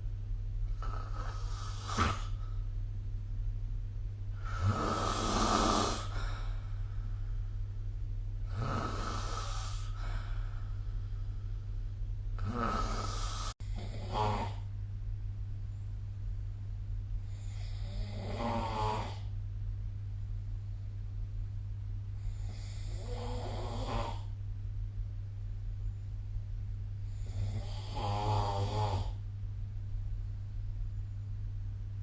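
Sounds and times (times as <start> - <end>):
steady low hum: 0.0 - 32.0
person snoring: 0.8 - 2.4, 4.3 - 6.7, 8.4 - 10.6, 12.4 - 14.7, 17.2 - 19.3, 22.2 - 24.4, 27.0 - 29.2.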